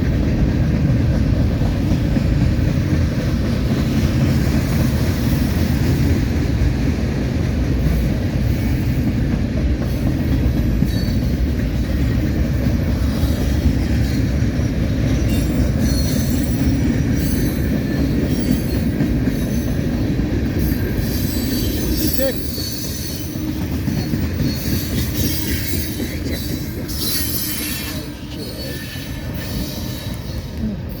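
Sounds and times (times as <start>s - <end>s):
steel wheels rumbling on rail: 0.0s - 31.0s
wheel squeals and clicks: 15.2s - 19.8s, 20.6s - 30.7s.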